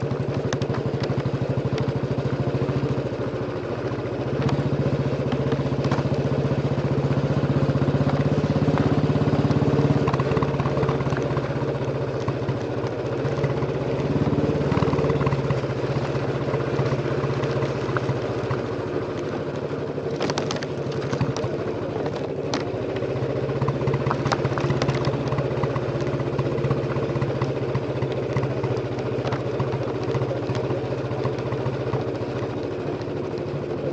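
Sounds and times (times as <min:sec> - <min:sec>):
motorcycle engine thumping: 0:00.0 - 0:33.9.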